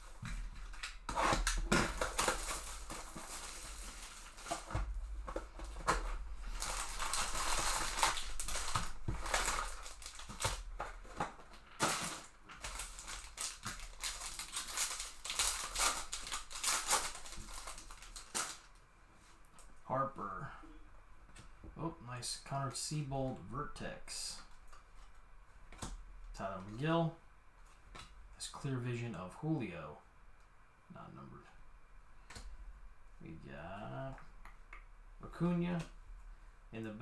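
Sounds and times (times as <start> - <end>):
plastic wrapping crinkling and tearing: 0.1 - 18.8.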